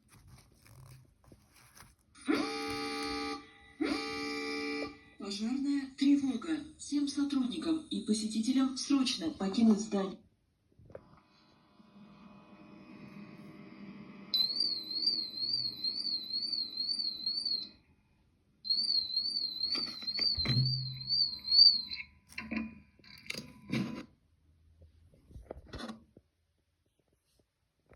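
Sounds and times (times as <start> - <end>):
high-pitched warbling alarm tone: 14.4 - 17.8, 18.7 - 22.1.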